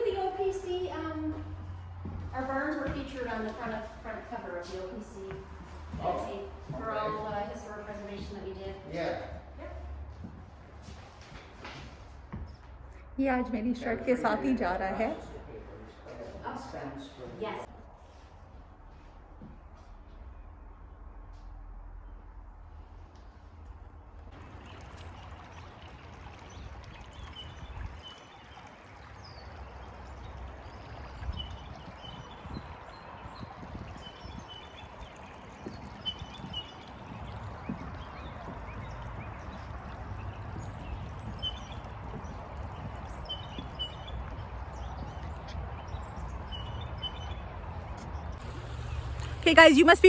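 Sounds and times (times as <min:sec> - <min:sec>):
creek water over stones: 0:24.3 - 0:45.2, 0:48.4 - 0:50.0
wind rumble on microphone: 0:24.4 - 0:49.5
bird chirping: 0:24.6 - 0:45.2.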